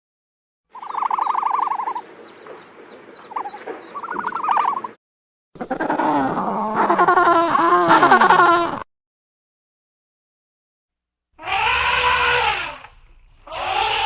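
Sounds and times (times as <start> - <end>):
rapid pulsed trilling calls: 0.7 - 5.0
animal calling with wavering pitch: 3.4 - 5.0, 5.6 - 7.9, 11.4 - 14.0.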